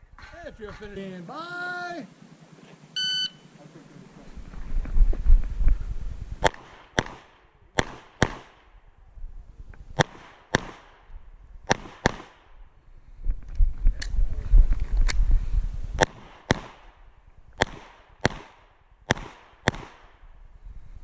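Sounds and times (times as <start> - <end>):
pistol shots: 6.4 - 8.7, 10.0 - 11.0, 11.7 - 12.5, 16.0 - 16.9, 17.6 - 20.1.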